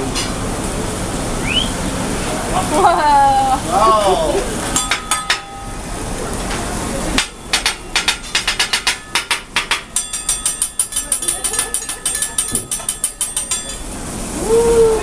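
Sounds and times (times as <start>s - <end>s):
metal spatulas clacking: 4.8s - 5.7s, 7.2s - 13.8s.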